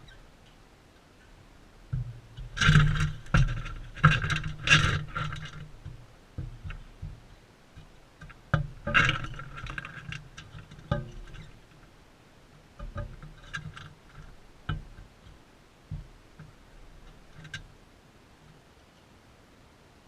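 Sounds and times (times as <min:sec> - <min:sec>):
beaks scraping and knocking on tray: 0:02.0 - 0:11.9.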